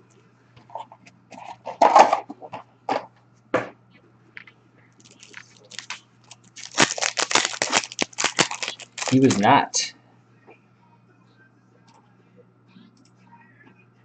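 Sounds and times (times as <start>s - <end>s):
card wrappers crinkling: 5.0s - 9.6s.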